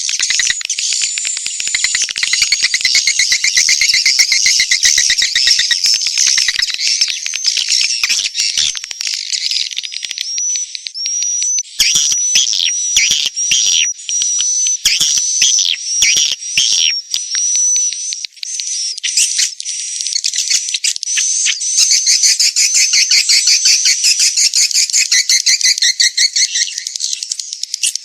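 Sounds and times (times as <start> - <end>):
rapid clicks: 0.0 - 11.0
buzzy bird twittering: 0.0 - 28.0
short bird chirps: 0.0 - 28.0.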